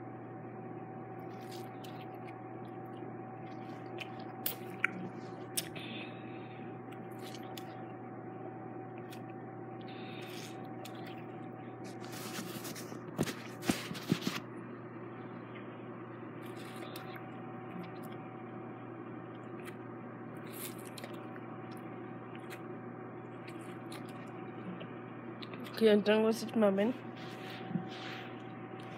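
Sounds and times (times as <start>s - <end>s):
steady background hum: 0.0s - 28.9s
wet chewing and sucking: 1.2s - 5.9s, 6.9s - 7.9s, 8.9s - 14.4s, 16.4s - 18.2s, 19.3s - 25.7s.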